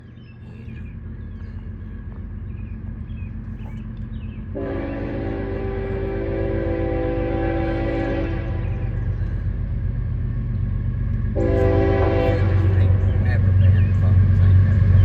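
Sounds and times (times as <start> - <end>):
train rumble: 0.0 - 15.0
locomotive horn: 4.5 - 9.0, 11.3 - 13.2.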